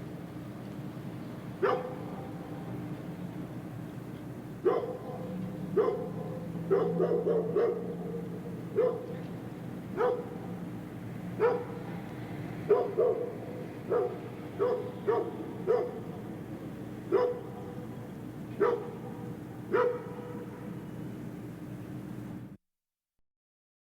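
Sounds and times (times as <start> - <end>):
steady low hum: 0.0 - 22.6
distant dog barking: 1.6 - 2.4, 4.6 - 9.2, 9.9 - 10.6, 11.4 - 12.0, 12.6 - 16.4, 17.1 - 17.9, 18.6 - 20.7.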